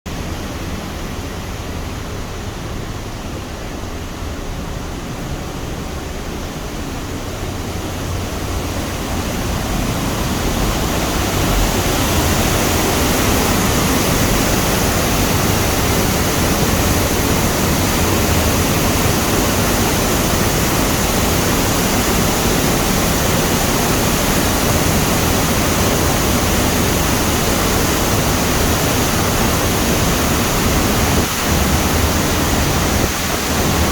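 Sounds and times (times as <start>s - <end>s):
waterfall roaring: 0.1s - 33.9s.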